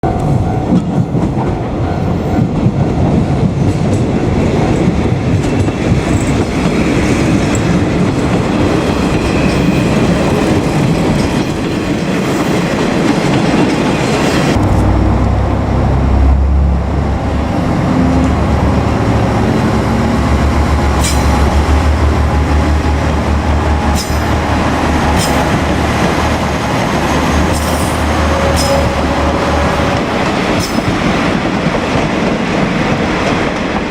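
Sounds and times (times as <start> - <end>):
train wheels rolling on rails: 0.0 - 33.9
deep engine drone: 14.5 - 30.6.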